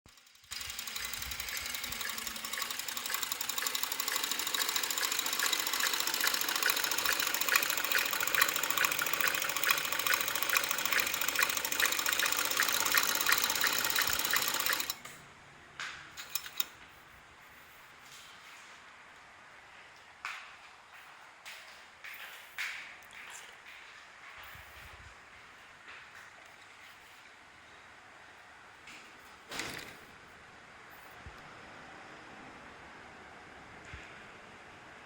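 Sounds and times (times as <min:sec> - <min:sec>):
sewing machine stitching: 0:00.1 - 0:15.2, 0:16.2 - 0:16.8.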